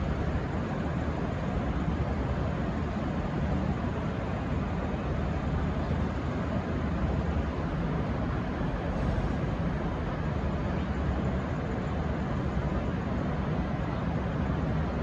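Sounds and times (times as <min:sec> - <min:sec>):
diesel railcar engines rumbling: 0:00.0 - 0:15.0.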